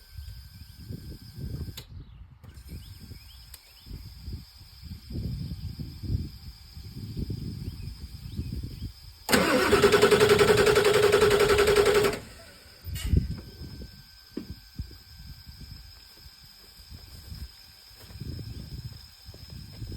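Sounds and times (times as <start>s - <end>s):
diesel engine cranking on starter: 9.2s - 14.3s.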